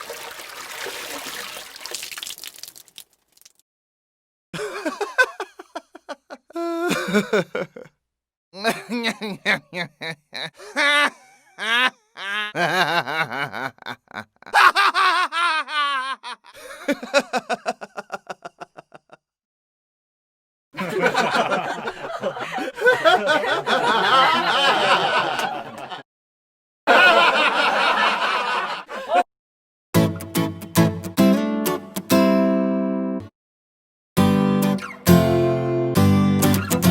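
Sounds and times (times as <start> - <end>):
layered laughter: 4.6 - 7.9, 8.6 - 19.2, 20.8 - 26.0, 26.9 - 29.3
person laughing: 4.6 - 7.9, 8.6 - 19.2, 20.8 - 26.0, 26.9 - 29.3.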